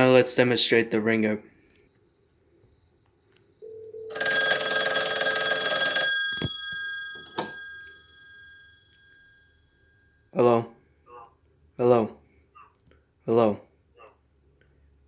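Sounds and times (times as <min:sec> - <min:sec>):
telephone bell ringing: 0:03.6 - 0:10.3.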